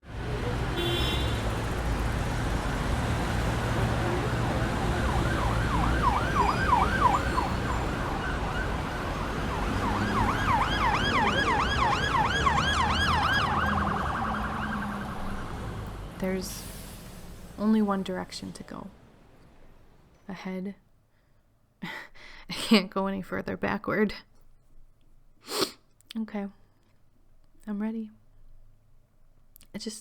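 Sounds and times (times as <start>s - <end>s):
traffic rumble: 0.0s - 20.6s
emergency siren yelping: 1.4s - 15.9s.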